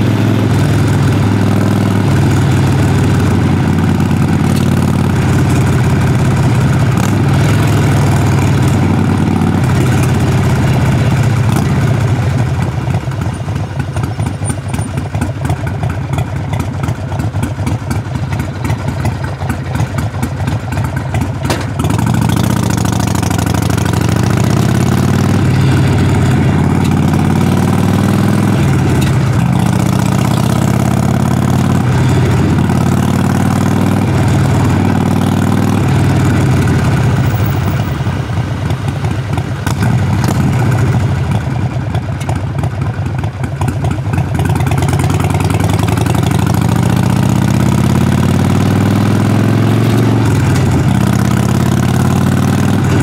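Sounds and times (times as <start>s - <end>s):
motorcycle exhaust running: 0.0s - 53.0s.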